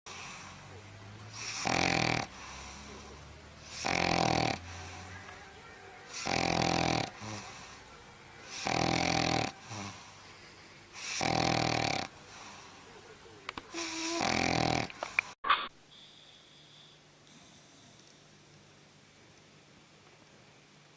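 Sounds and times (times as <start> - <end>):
dog snoring: 0.1 - 5.2, 6.1 - 7.8, 8.4 - 10.2, 11.0 - 12.8, 13.7 - 15.0
dog breathing: 0.1 - 5.4, 6.1 - 13.0, 13.7 - 18.1.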